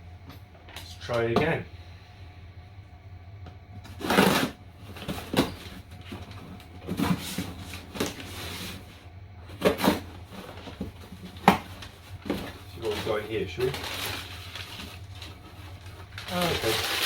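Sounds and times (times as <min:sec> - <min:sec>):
steady low hum: 0:00.0 - 0:17.0
cardboard parcel knocks and rustles: 0:04.0 - 0:08.9, 0:09.5 - 0:17.0.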